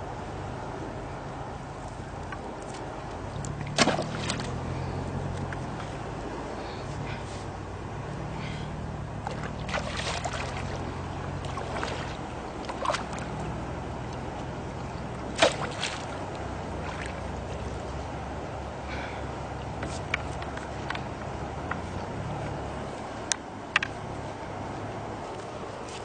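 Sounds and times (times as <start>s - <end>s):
steady low hum: 0.0s - 26.0s
water sloshing: 2.6s - 6.1s, 8.8s - 18.3s.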